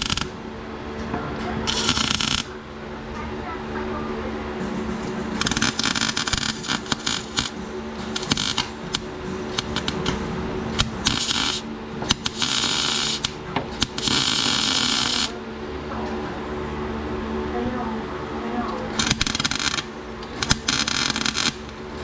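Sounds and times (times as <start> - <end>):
welding arc crackling: 0.0 - 0.4, 1.6 - 2.6, 5.0 - 15.4, 18.9 - 22.0
steady low hum: 0.0 - 22.0.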